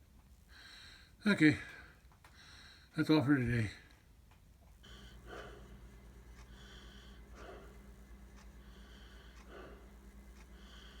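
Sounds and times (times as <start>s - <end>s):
soft breathing: 0.3s - 3.0s, 4.8s - 11.0s
steady low hum: 3.5s - 11.0s.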